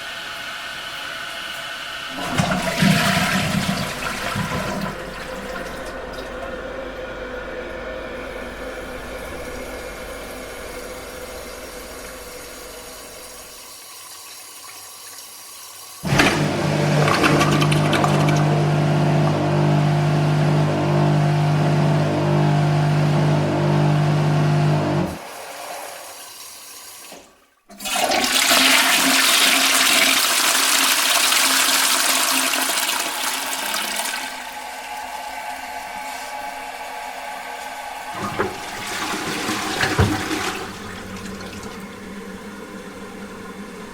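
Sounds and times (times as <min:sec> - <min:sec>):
toilet flushing: 0:00.0 - 0:43.9
cistern refilling: 0:02.1 - 0:23.4, 0:37.4 - 0:43.9
low hum: 0:02.2 - 0:13.5.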